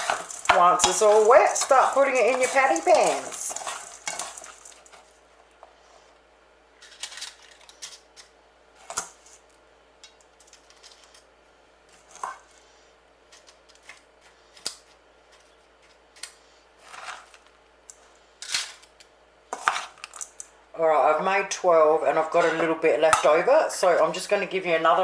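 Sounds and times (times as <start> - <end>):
spoon scraping and tapping bowl: 0.0 - 4.8
crunchy rustles: 0.0 - 5.1.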